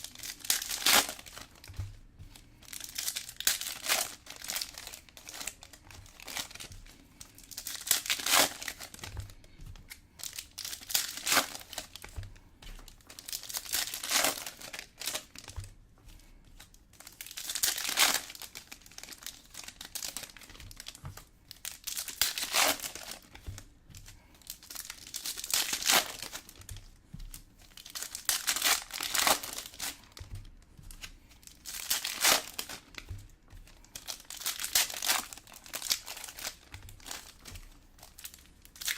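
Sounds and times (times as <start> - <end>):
plastic wrappers crinkling and tearing: 0.0 - 38.9.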